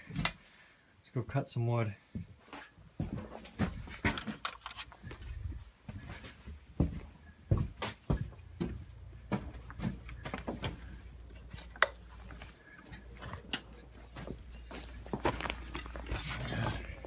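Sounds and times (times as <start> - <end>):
objects knocking and clattering: 3.0 - 5.0.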